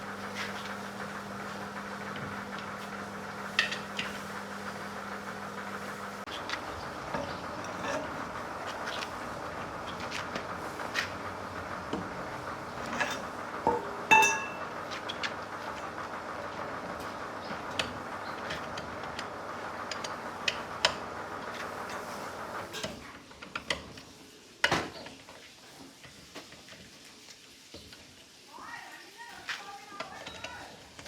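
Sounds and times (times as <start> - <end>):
machine hum: 0.0 - 22.8
metal tools clinking: 14.1 - 14.6.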